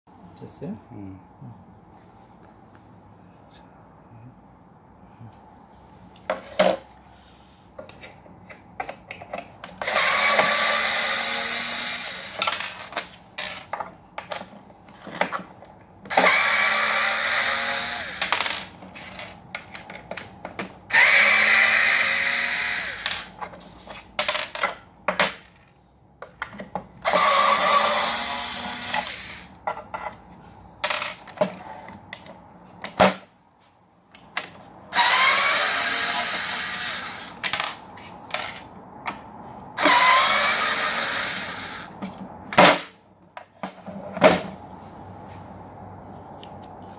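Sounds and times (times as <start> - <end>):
electric drill motor running: 9.8 - 12.6, 16.1 - 18.4, 20.9 - 23.2, 27.0 - 29.5, 34.9 - 37.4, 39.8 - 42.0.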